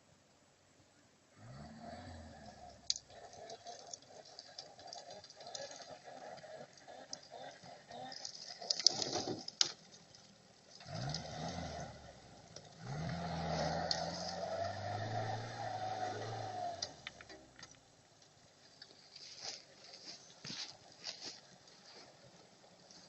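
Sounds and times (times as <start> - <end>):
car engine revving: 1.4 - 8.9, 10.7 - 17.6.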